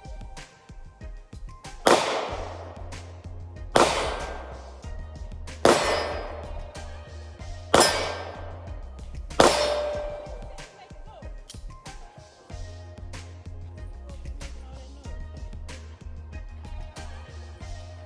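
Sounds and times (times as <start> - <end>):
background music with bass line: 0.0 - 18.0
gunshots with ringing decay: 1.7 - 10.7.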